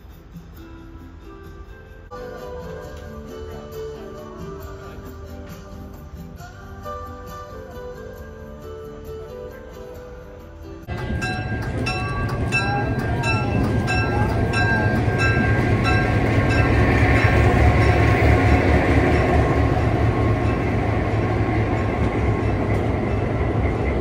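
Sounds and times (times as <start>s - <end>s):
train rumbling on rails: 10.8s - 24.0s.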